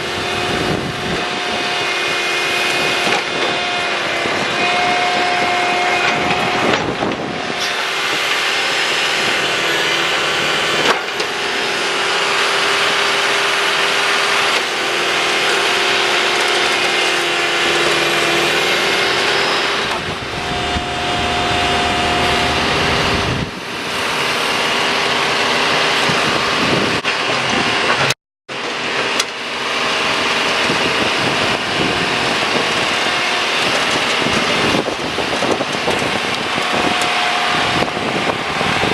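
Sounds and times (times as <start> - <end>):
backhoe engine running: 0.0 - 27.4
loud clatter: 14.6 - 25.4
steady whine: 15.6 - 26.0.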